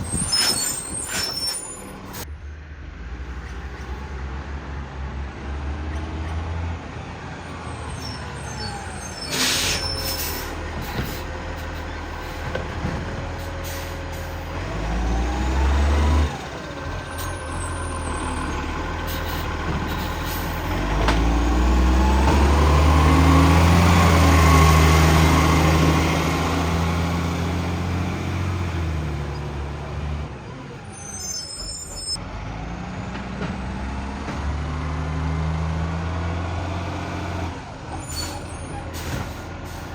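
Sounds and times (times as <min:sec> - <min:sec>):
diesel truck engine revving: 0:02.9 - 0:39.9
air brake hiss: 0:09.2 - 0:11.2.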